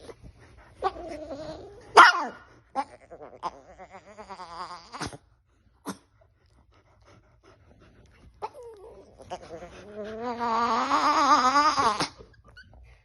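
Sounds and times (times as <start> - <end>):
small dog warbling growl: 0.8 - 2.0, 2.7 - 5.2, 8.4 - 12.3.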